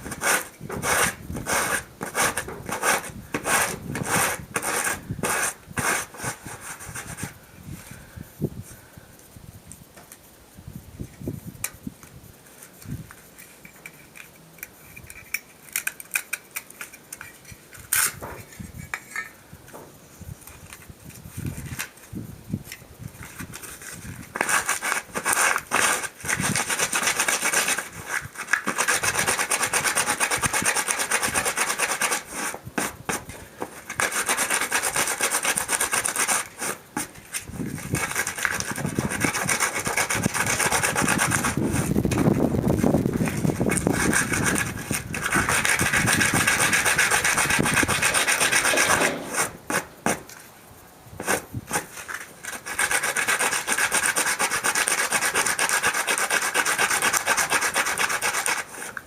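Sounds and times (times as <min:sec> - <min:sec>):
sandpaper rasping on pelt: 0:00.0 - 0:07.4, 0:23.2 - 0:50.3, 0:51.2 - 0:59.0.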